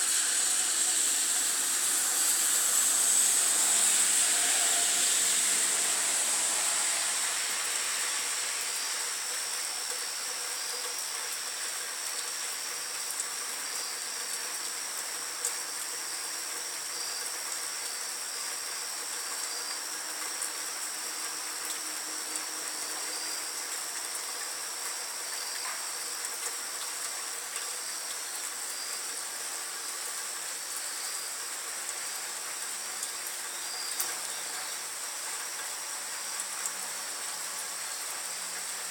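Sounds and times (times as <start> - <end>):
insect drone: 0.0 - 38.9
rain with drips: 0.0 - 38.9
car passing: 0.2 - 8.8.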